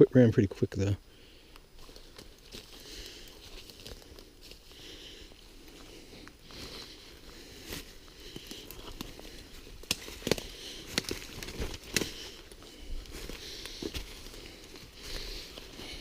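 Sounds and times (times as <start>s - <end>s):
footsteps through undergrowth: 1.6s - 16.0s
twigs snapping: 7.7s - 15.7s.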